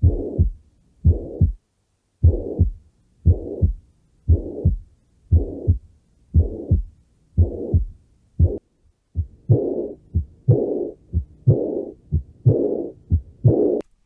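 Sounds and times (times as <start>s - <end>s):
heart murmur: 0.0s - 1.6s, 2.2s - 8.6s, 9.2s - 13.8s
heartbeat thumps: 0.0s - 1.6s, 2.2s - 13.8s
sharp heart clicks: 0.0s - 1.6s, 2.2s - 5.8s, 6.4s - 8.6s.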